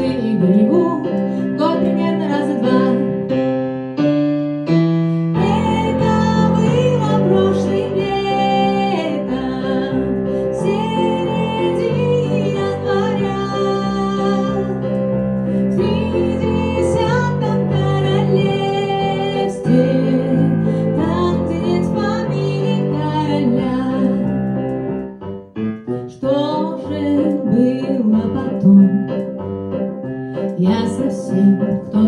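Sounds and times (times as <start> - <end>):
woman singing: 0.0 - 3.3, 5.4 - 14.9, 15.7 - 24.3, 26.1 - 29.1, 30.5 - 32.0
keyboard playing chords: 0.0 - 32.0.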